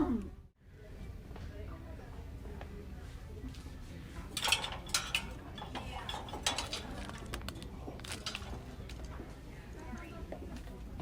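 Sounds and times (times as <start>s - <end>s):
small hard objects clattering: 4.4s - 9.0s.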